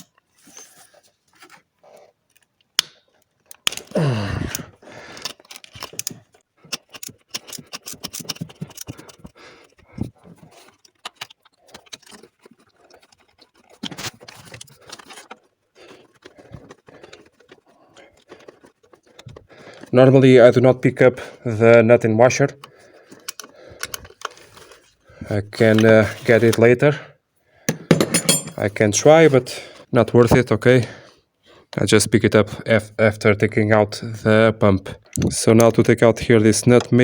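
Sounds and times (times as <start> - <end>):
metal clicks and jangling: 27.9 - 28.6
metal scraping: 27.9 - 28.8.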